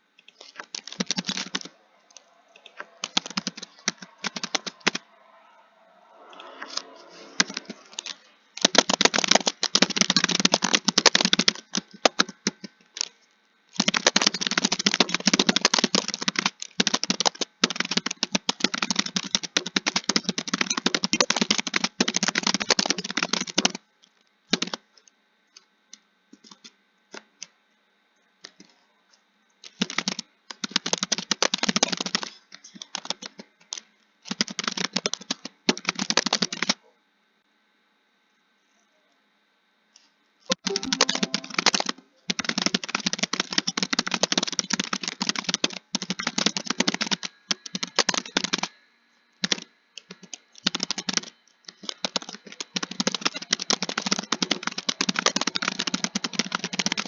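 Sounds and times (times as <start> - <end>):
fast typing on keyboard: 0.4 - 5.1, 7.4 - 23.8, 24.5 - 24.8, 29.6 - 36.8, 40.5 - 48.8, 49.4 - 57.0.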